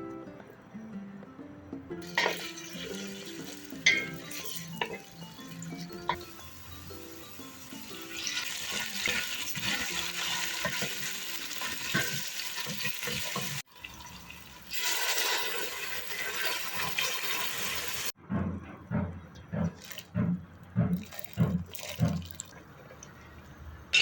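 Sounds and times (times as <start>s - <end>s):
water running: 2.0s - 18.2s, 20.8s - 23.4s.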